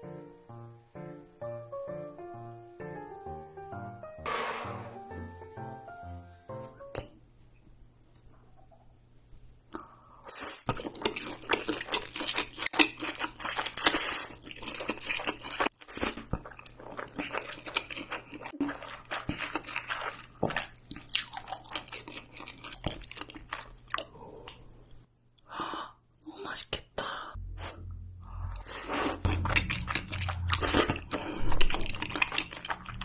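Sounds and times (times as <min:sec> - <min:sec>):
person chewing crunchy food: 0:09.8 - 0:25.0, 0:28.4 - 0:33.0.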